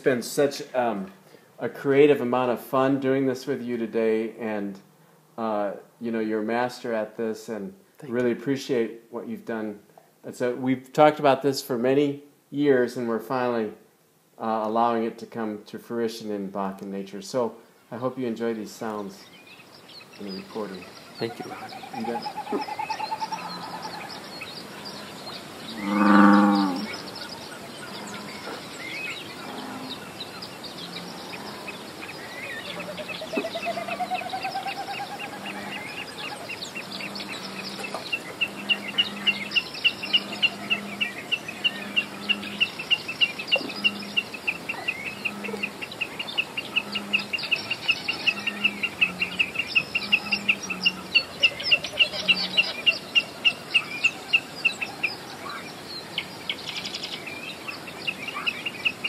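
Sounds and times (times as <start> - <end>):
high bird chirps: 19.3 - 59.0
loud low bird call: 20.1 - 55.7
soft low bird notes: 24.8 - 28.7.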